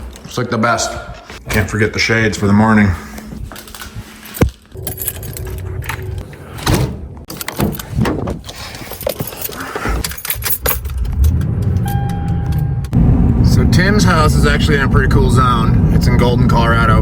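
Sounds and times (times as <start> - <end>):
car engine and road rumble: 3.4 - 17.0
keys jangling: 3.5 - 6.3, 7.3 - 12.7
short steady beep: 11.8 - 12.9.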